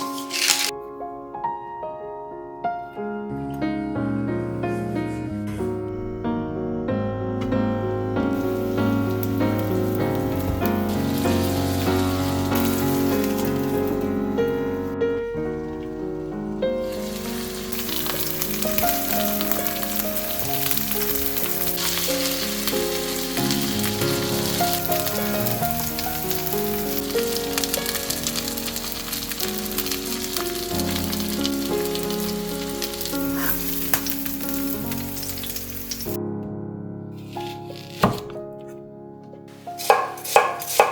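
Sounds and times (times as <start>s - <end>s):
food sizzling in a pan: 0.0s - 0.7s, 8.3s - 14.8s, 15.4s - 36.2s, 37.2s - 38.3s, 39.5s - 40.9s
background music: 0.0s - 40.9s.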